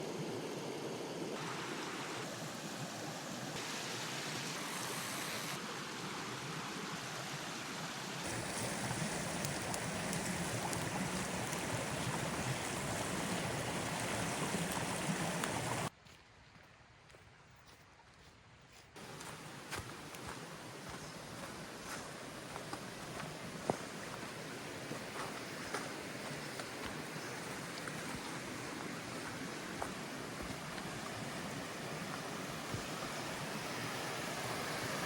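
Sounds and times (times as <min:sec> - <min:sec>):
rushing water: 0:00.0 - 0:15.9, 0:19.0 - 0:35.0.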